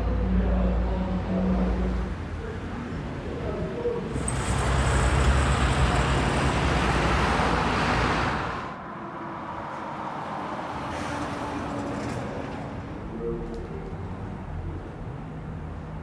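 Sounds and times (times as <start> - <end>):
traffic noise: 0.0 - 16.0
vehicle passing close by: 4.2 - 8.8.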